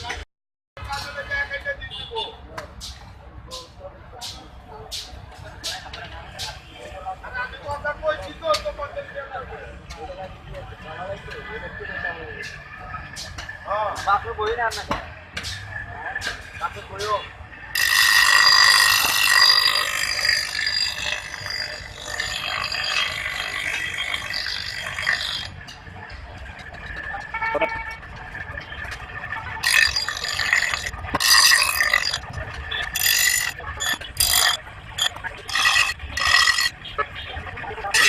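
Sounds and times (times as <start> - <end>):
knife blade grinding on sharpener: 17.8 - 25.5, 29.6 - 32.2, 32.8 - 36.7.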